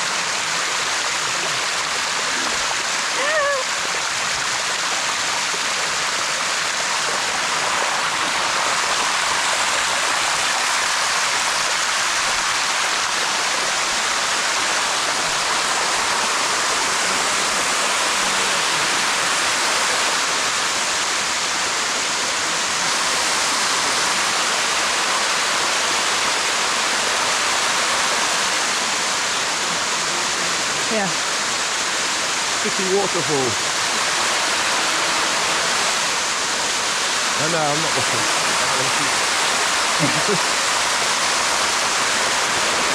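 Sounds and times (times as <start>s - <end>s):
waterfall rushing: 0.0s - 42.9s.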